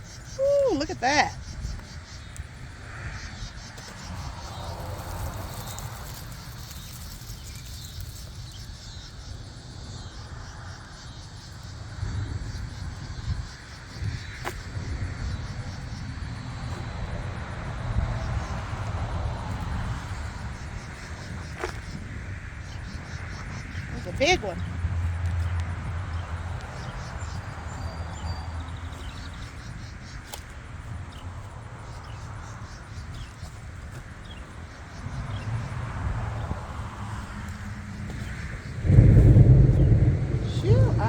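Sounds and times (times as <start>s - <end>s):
insects chirping: 0.0s - 41.0s
low rumble: 38.6s - 41.0s.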